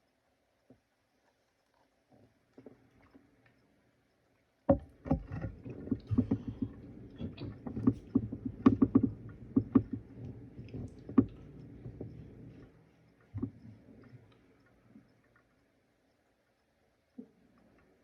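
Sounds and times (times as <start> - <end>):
stomach gurgling: 5.0 - 14.3.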